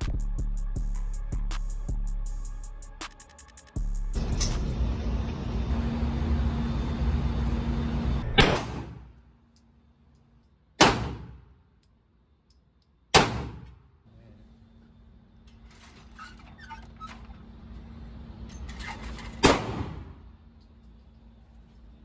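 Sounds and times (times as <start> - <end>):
background music: 0.0 - 5.7
pistol shots with echo: 10.8 - 11.4, 13.1 - 13.7.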